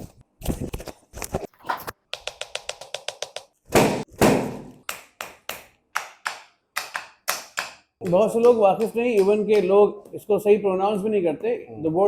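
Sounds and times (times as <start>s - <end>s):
hammer tapping: 4.8s - 9.8s.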